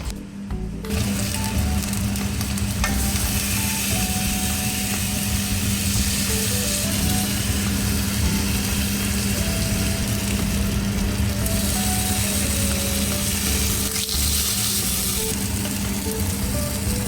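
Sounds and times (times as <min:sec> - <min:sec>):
food sizzling in a pan: 0:00.9 - 0:17.0.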